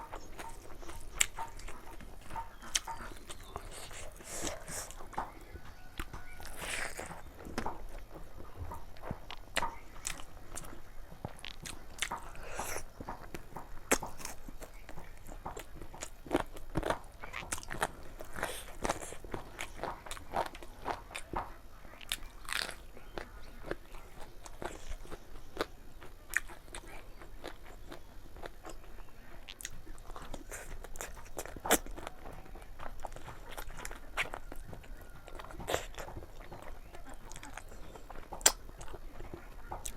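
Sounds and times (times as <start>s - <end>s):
close chewing and crunching: 0.0s - 39.9s.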